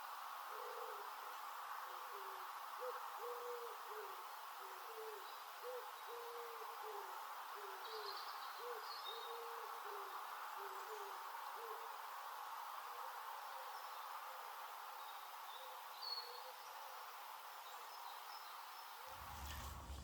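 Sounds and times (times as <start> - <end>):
wood pigeon cooing: 2.1 - 8.0, 8.6 - 11.8.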